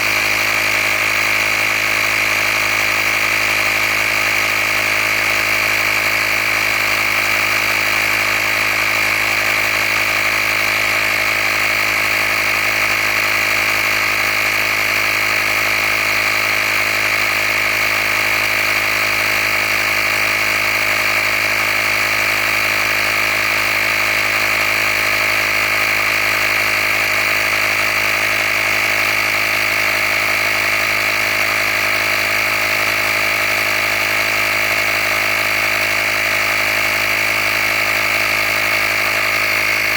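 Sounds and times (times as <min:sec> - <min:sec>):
air compressor drone with high whine: 0:00.0 - 0:39.9.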